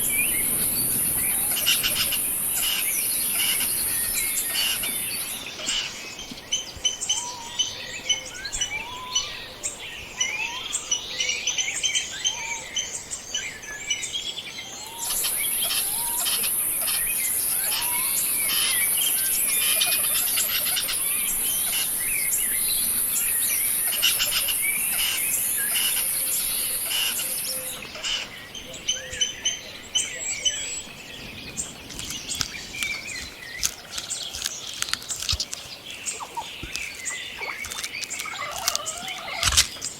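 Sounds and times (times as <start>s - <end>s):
wild birds chirping and singing: 0.0s - 39.9s
high-pitched insect buzz: 15.1s - 27.8s.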